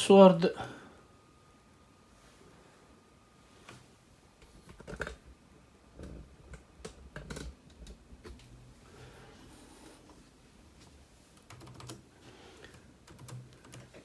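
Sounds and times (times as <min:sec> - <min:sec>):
faint laptop keystrokes: 0:11.4 - 0:12.0.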